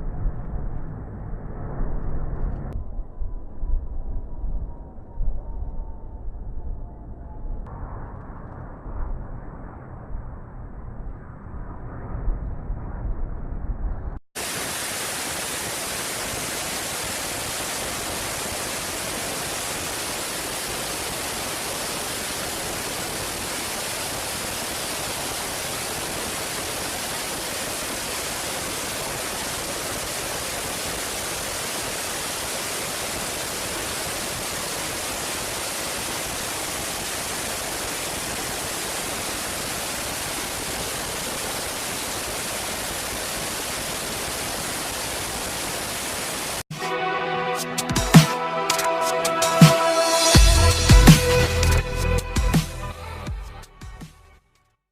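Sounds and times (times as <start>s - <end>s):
static hiss: 14.4s - 46.6s.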